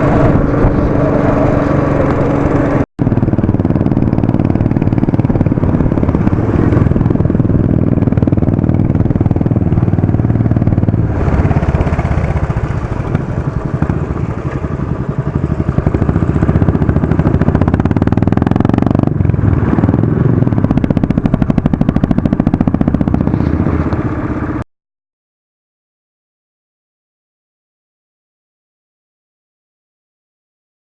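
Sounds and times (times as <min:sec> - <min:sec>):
motorcycle engine running: 0:00.0 - 0:24.6.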